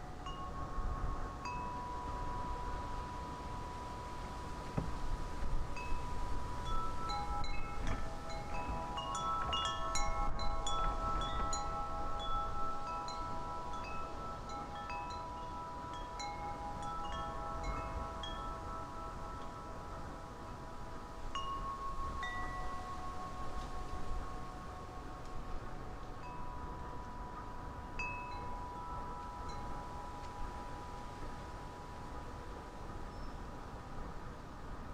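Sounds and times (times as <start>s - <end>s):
wind chimes ringing: 0.0s - 33.7s
wind rumble on microphone: 0.0s - 34.9s.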